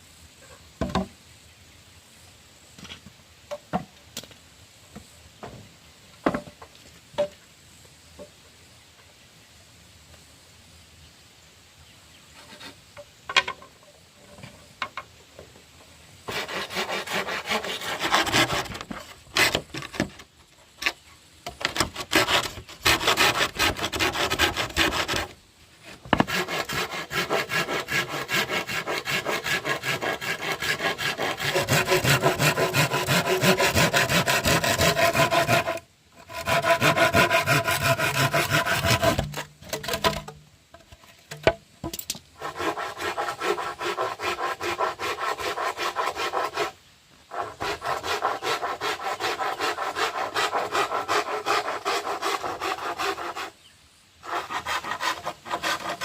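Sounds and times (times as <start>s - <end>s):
hand saw cutting wood: 16.3s - 20.2s, 20.8s - 40.3s, 42.4s - 53.6s, 54.2s - 56.0s.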